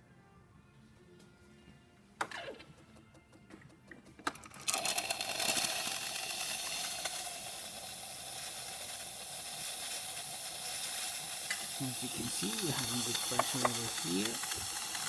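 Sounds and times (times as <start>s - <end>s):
steam wand hissing: 4.7s - 15.0s.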